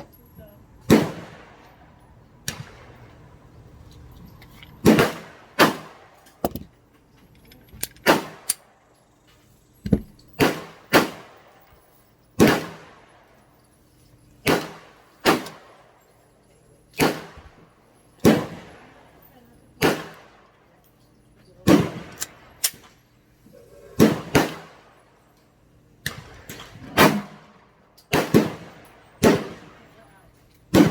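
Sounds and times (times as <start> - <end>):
pistol shots: 0.9 - 1.7, 4.8 - 6.2, 8.0 - 8.7, 10.4 - 11.6, 12.4 - 13.1, 14.4 - 15.9, 17.0 - 17.6, 18.2 - 18.9, 19.8 - 20.4, 21.6 - 22.9, 24.0 - 25.0, 26.0 - 29.9
fainter gunshots: 24.0 - 24.9.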